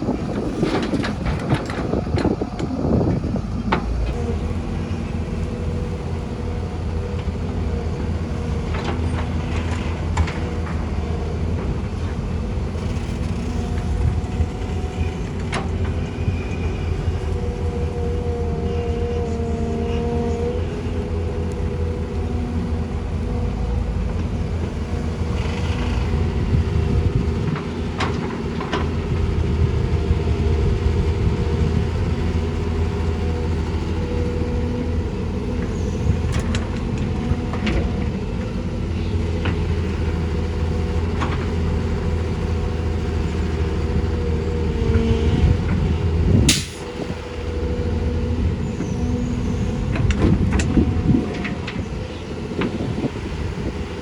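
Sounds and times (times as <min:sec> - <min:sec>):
heavy diesel engines running: 0:00.0 - 0:54.0
sharp knocks and clanks: 0:46.5 - 0:47.0.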